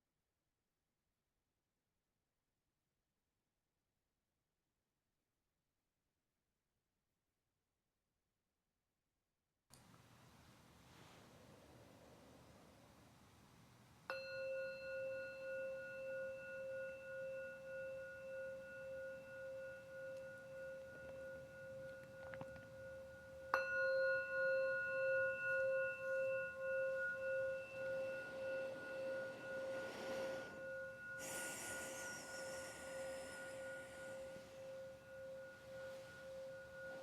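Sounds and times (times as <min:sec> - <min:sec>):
soft rustle: 0:09.9 - 0:13.4, 0:25.6 - 0:37.0
meditation bell ringing: 0:14.1 - 0:37.0.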